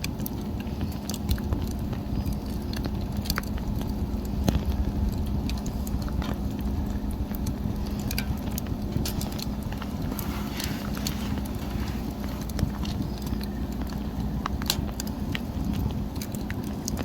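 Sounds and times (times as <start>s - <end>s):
wood fire crackling and popping: 0.0s - 17.0s
low rumble: 1.4s - 17.0s.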